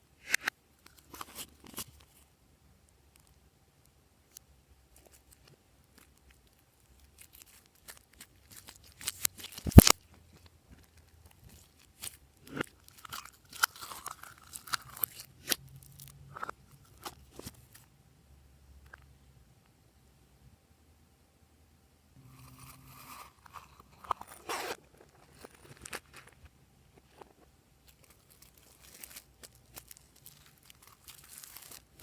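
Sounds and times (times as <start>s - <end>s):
slime clicking and crackling: 27.9s - 32.0s.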